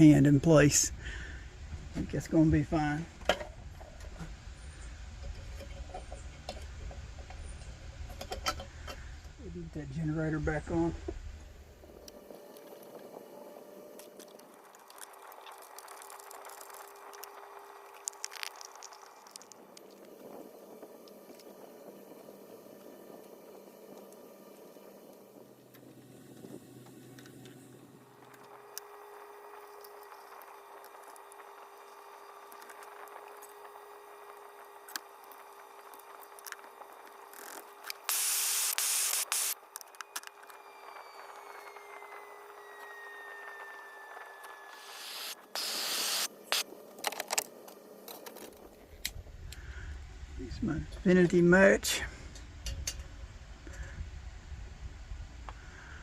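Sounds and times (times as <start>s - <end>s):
hissing spray: 38.0s - 39.6s, 44.7s - 46.6s.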